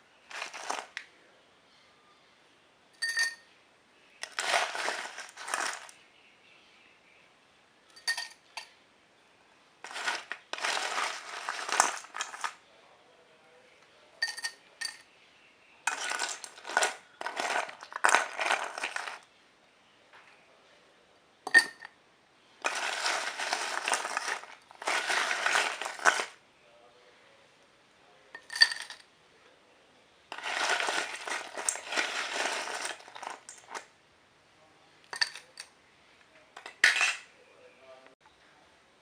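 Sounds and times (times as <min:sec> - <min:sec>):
ice clinking in a glass: 0:03.0 - 0:03.4, 0:04.2 - 0:05.9, 0:07.9 - 0:08.7, 0:14.2 - 0:15.0, 0:15.9 - 0:19.2, 0:21.5 - 0:21.9, 0:28.4 - 0:29.0, 0:35.1 - 0:35.7, 0:36.6 - 0:37.3.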